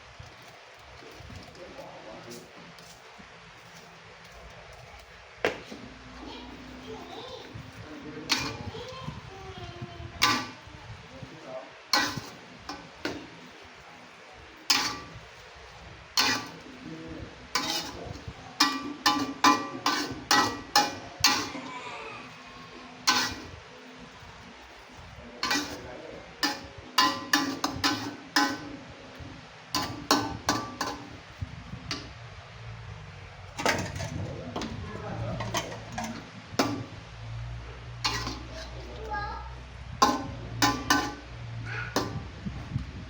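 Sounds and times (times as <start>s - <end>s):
utensils clinking against pots: 6.2s - 9.3s, 10.1s - 10.7s, 11.9s - 13.6s, 14.5s - 31.2s, 33.5s - 37.0s, 37.9s - 39.0s, 40.0s - 42.3s.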